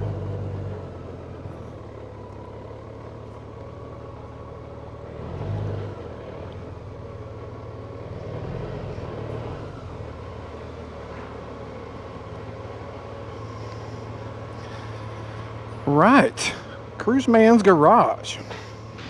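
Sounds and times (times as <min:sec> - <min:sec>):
motorcycle engine running: 0:09.8 - 0:19.0.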